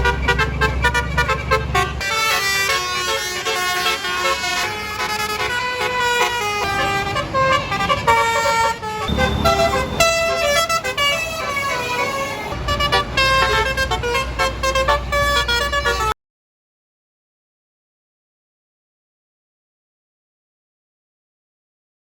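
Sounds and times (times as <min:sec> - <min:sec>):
bus engines running: 0:00.0 - 0:16.2
bus horn playing a melody: 0:00.0 - 0:16.2.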